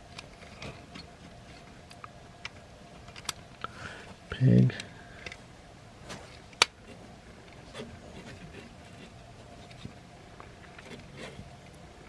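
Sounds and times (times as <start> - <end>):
plastic toy parts rubbing: 6.3 - 10.0.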